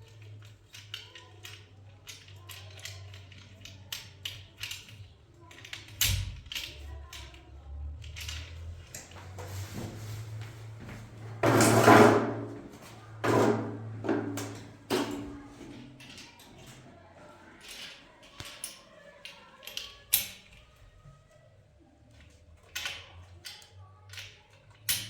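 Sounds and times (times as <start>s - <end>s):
knocks and clatters: 13.2s - 16.8s.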